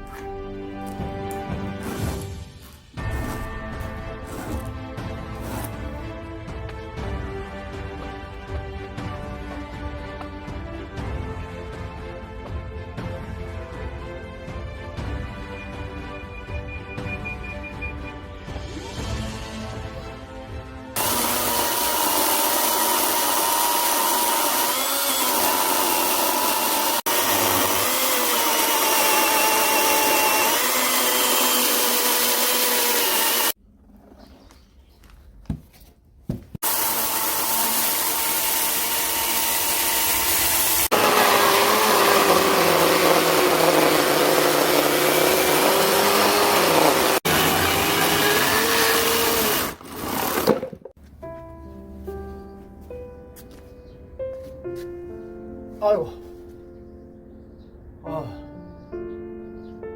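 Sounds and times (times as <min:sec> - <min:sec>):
power grinder grinding steel: 0:21.0 - 0:33.6, 0:36.6 - 0:50.7.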